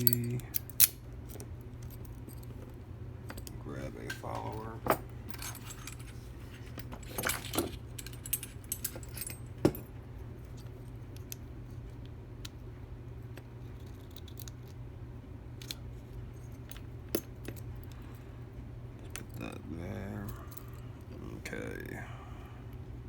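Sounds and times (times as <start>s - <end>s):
metal tools clicking and tapping: 0.0s - 1.4s
steady low hum: 0.0s - 23.0s.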